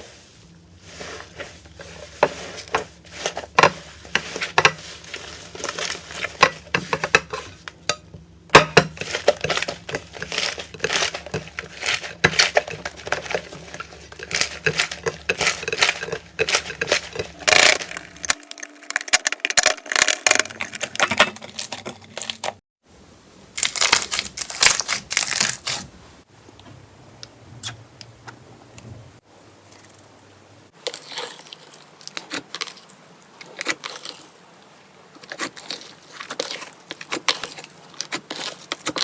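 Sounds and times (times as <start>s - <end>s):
slime crackling and popping: 14.2s - 22.4s, 23.6s - 25.8s.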